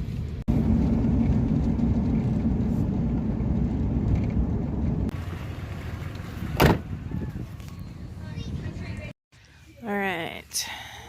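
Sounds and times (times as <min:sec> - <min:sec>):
vehicle engine and road noise: 0:00.0 - 0:09.8
loud thump: 0:06.6 - 0:06.9.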